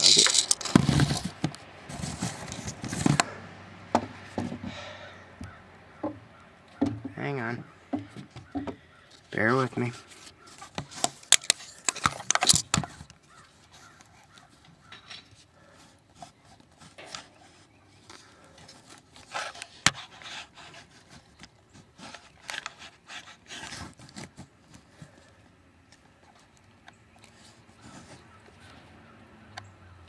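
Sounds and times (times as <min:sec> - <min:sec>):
camera handling rubbing: 0:00.0 - 0:03.3, 0:10.0 - 0:15.5, 0:16.1 - 0:25.3.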